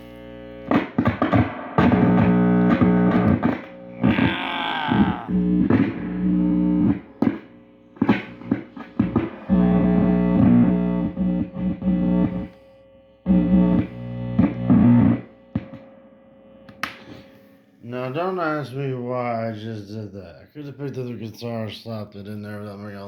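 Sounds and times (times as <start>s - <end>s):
amp buzzing hum: 0.0s - 19.3s
cable pops and crackles: 16.6s - 17.2s.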